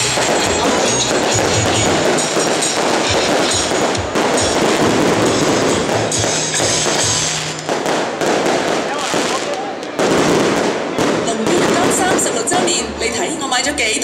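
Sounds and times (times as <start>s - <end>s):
low drum beats: 0.0s - 9.4s
clashing and crackling percussion: 0.0s - 14.0s.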